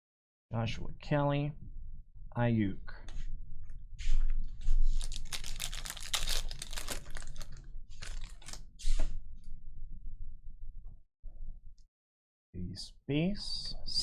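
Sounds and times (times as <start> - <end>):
cardboard cards clicking and rustling: 5.0 - 8.6.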